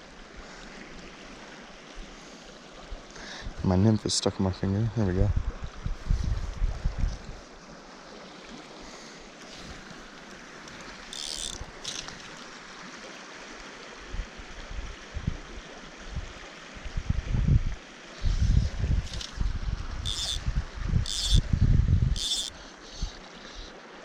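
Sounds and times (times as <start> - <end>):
wind buffeting microphone: 5.2 - 7.4, 14.1 - 22.3
mountain stream rushing: 7.5 - 17.0.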